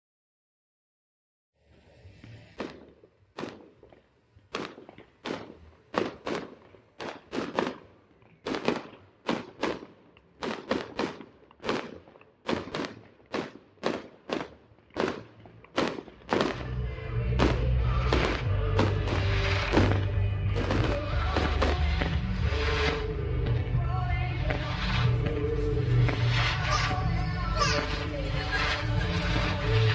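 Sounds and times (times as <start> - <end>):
music with deep bass: 16.4 - 29.9.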